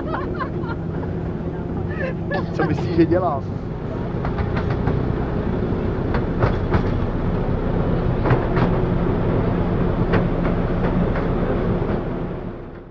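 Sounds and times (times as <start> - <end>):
train rumbling on track: 0.0 - 12.9
train wheels clicking and knocking: 4.2 - 5.2, 6.1 - 7.1.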